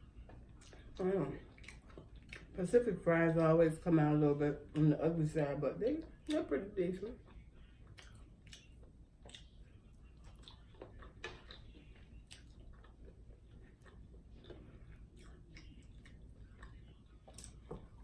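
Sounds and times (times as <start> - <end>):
person chewing crunchy food: 0.1 - 2.6, 7.2 - 18.0.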